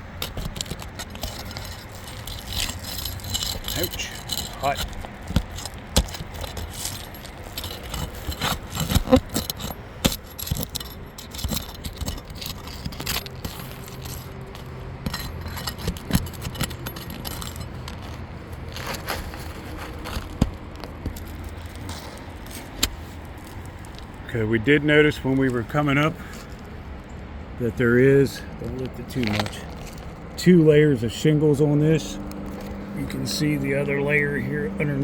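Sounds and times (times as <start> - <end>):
shingles scraping: 0.0 - 24.3
metal tools clinking: 0.0 - 24.4, 28.5 - 35.0.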